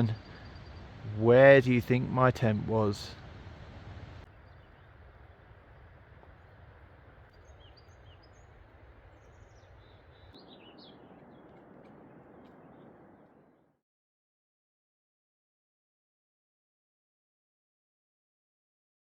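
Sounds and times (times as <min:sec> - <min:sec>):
faint birds chirping: 0:00.0 - 0:13.7
low outdoor background noise: 0:00.0 - 0:13.8.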